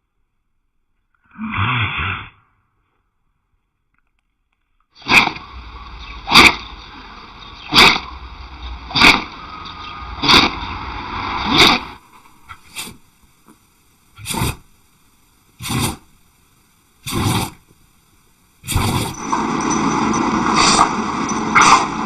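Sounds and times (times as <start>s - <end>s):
background hiss: 0.0s - 22.0s
dog sneezing: 5.0s - 5.4s, 7.7s - 8.0s, 9.0s - 9.3s, 11.4s - 13.0s, 14.2s - 14.6s, 15.6s - 16.1s, 17.0s - 17.6s.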